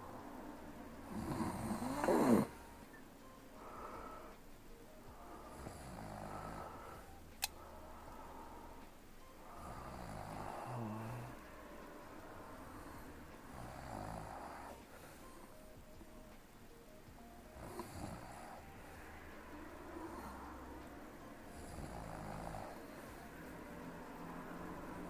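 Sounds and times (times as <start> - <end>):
woman snoring: 1.0 - 2.9, 5.4 - 7.1, 9.4 - 15.3, 17.6 - 20.8, 21.4 - 25.0.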